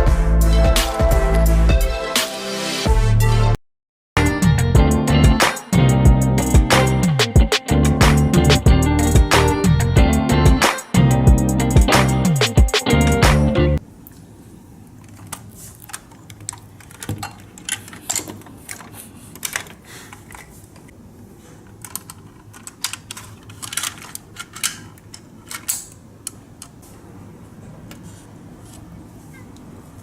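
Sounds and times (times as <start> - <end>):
small hard parts clicking: 15.0 - 20.9, 21.6 - 26.8.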